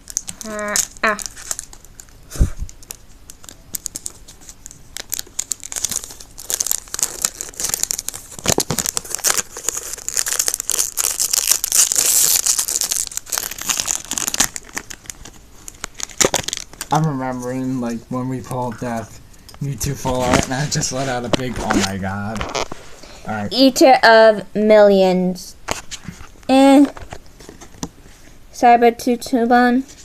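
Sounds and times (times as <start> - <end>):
foil wrapper tearing and crinkling: 0.0 - 16.9, 20.1 - 22.9.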